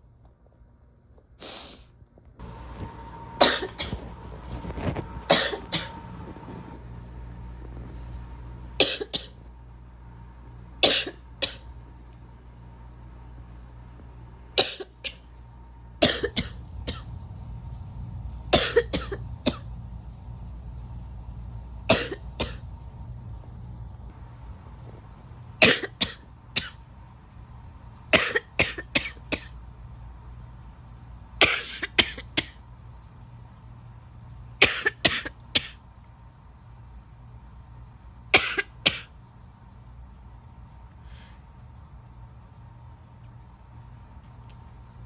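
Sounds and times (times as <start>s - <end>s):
steady low hum: 0.0s - 45.0s
person coughing: 3.4s - 4.0s, 5.3s - 6.0s, 8.8s - 9.4s, 10.8s - 11.6s, 14.6s - 15.2s, 16.0s - 17.0s, 18.6s - 19.6s, 21.9s - 22.6s, 25.6s - 26.8s, 28.2s - 29.5s, 31.4s - 32.6s, 34.6s - 35.8s, 38.4s - 39.1s.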